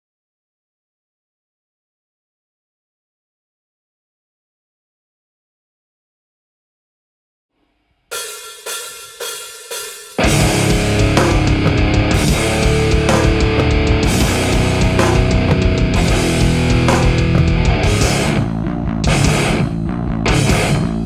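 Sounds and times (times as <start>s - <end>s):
drum kit with cymbals: 8.1s - 18.4s, 19.1s - 19.6s, 20.3s - 21.0s
bass guitar: 10.2s - 21.0s
distorted electric guitar: 10.2s - 21.0s.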